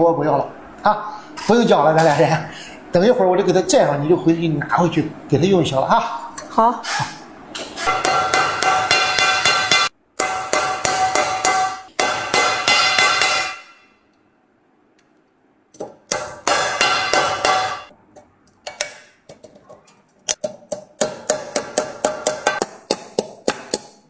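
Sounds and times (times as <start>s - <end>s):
hammering on metal: 7.8s - 14.0s, 16.0s - 17.9s, 20.4s - 24.0s.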